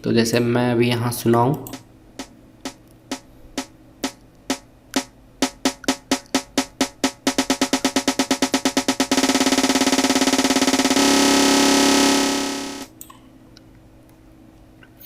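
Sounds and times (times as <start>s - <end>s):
snare drum roll: 2.2s - 12.9s.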